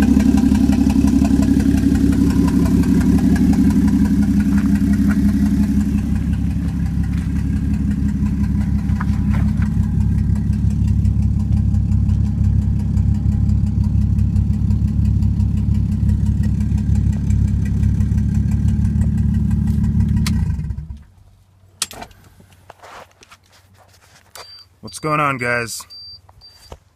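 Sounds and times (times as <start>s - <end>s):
engine idling roughly: 0.0s - 21.0s.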